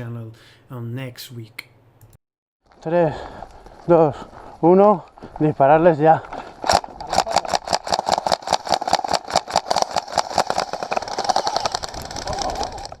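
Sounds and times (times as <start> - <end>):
airsoft guns firing: 6.7 - 11.8.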